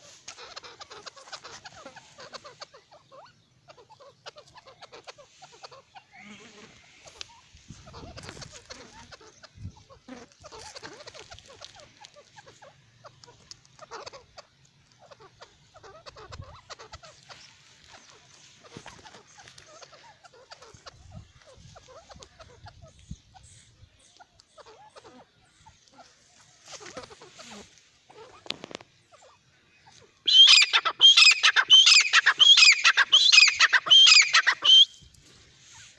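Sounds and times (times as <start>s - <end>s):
francolin clucking calls: 0.0s - 35.9s
francolin calling harshly: 29.2s - 35.1s.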